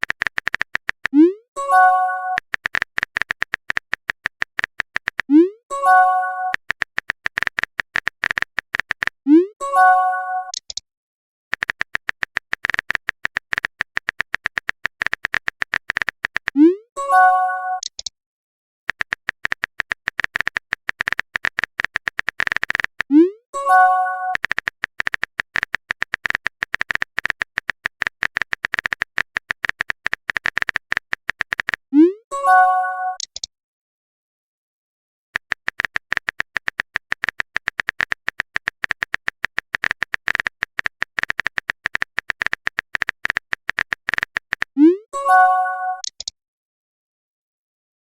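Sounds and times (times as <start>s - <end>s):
phone keyboard typing clicks: 0.0s - 1.4s, 2.3s - 9.2s, 11.5s - 16.6s, 17.8s - 18.1s, 18.9s - 23.2s, 23.8s - 31.9s, 33.2s - 33.5s, 35.4s - 44.8s, 45.4s - 46.3s
message chime: 45.2s - 46.0s.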